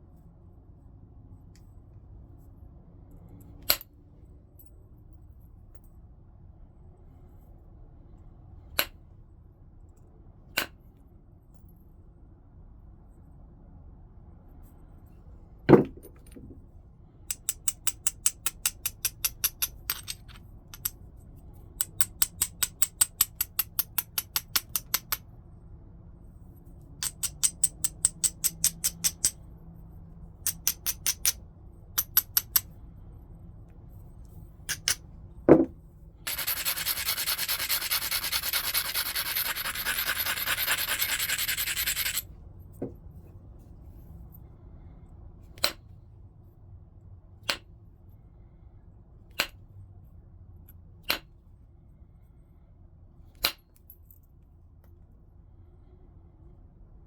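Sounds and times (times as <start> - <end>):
sharp stone clicks: 34.7 - 35.0
steady stone grinding: 36.3 - 42.2
stone scraping flint: 36.3 - 42.2.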